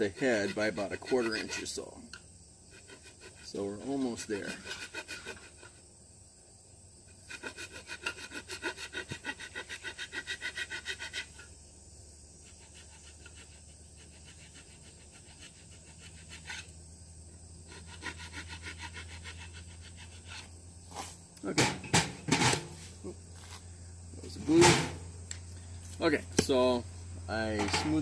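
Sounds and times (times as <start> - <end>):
wood rasp filing wood: 0.0 - 1.9, 2.7 - 5.8, 7.2 - 11.5, 12.4 - 16.8, 17.7 - 21.2.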